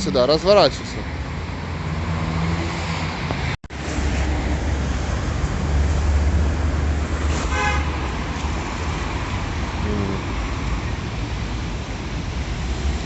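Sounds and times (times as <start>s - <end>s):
street traffic rumbling: 0.0s - 13.0s
car horn toot: 7.5s - 8.0s.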